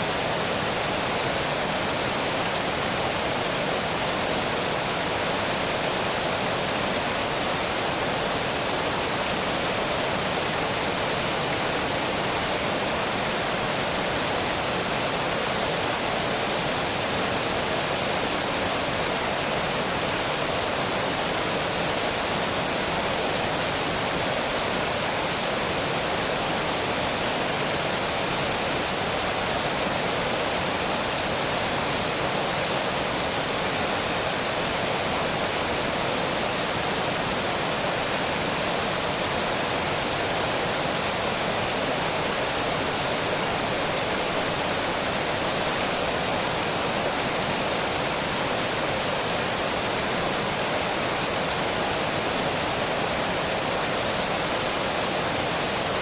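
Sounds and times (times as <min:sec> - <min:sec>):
water rushing over dam: 0:00.0 - 0:56.0.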